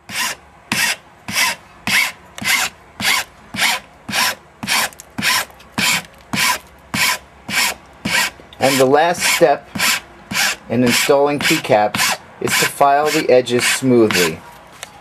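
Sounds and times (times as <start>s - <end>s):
hand file rasping: 0.0s - 14.4s.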